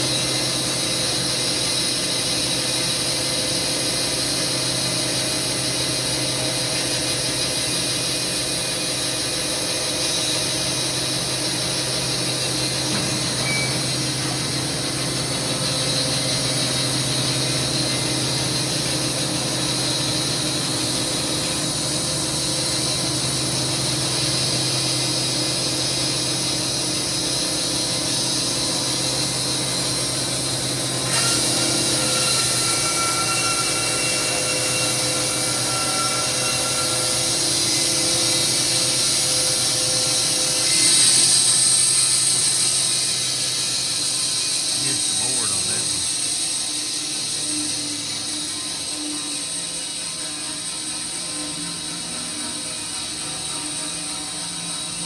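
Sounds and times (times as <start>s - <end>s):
band sawmill hum and hiss: 0.0s - 55.0s.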